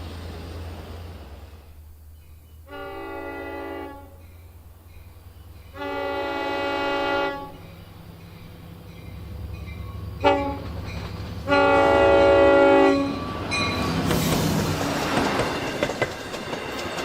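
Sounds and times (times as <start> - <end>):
locomotive horn blasts: 2.6 - 4.2, 5.7 - 7.7, 10.2 - 10.8, 11.4 - 13.4.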